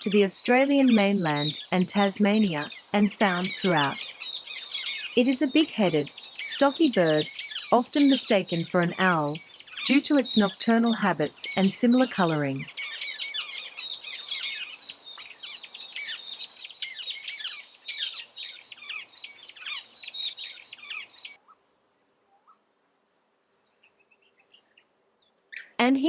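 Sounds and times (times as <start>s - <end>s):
faint high-pitched hum: 0.0s - 17.0s
small birds chirping: 0.0s - 21.5s.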